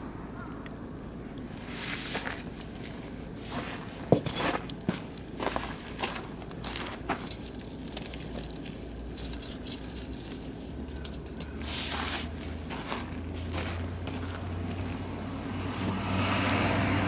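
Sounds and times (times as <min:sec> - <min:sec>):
low fire rumble: 0:00.0 - 0:17.0
wood fire crackling and popping: 0:00.0 - 0:17.0.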